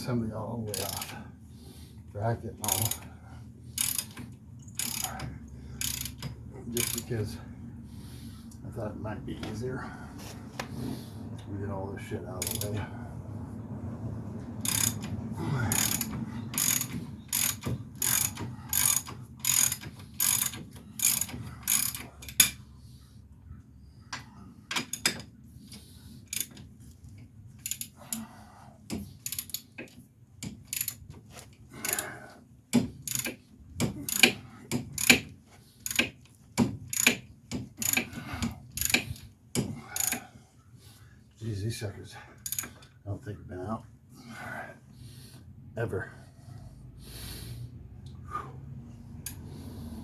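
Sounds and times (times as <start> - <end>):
ratchet wrench clicking: 0.7 - 1.2, 2.6 - 3.1, 3.8 - 7.1, 12.4 - 12.8, 14.6 - 22.6, 26.3 - 26.6, 27.6 - 28.3, 29.2 - 29.9, 30.6 - 31.0, 33.0 - 33.4, 34.0 - 36.2, 36.9 - 37.2, 37.8 - 39.2, 40.0 - 40.2, 42.4 - 42.8.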